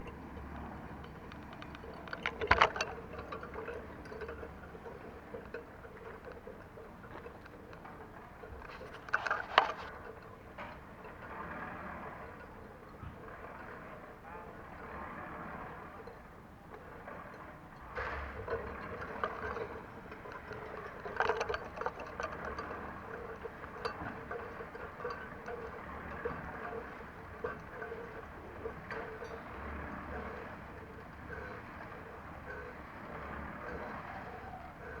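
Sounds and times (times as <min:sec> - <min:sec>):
light clicks and knocks: 0:00.0 - 0:11.6
tools clinking and scraping: 0:01.3 - 0:10.8.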